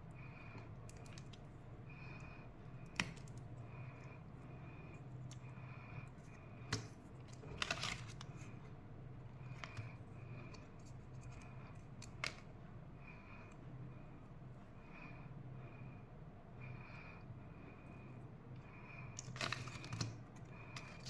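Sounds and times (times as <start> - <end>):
low steady hum: 0.0 - 21.0
plastic packaging clicks and crinkles: 6.7 - 8.4, 19.2 - 21.0.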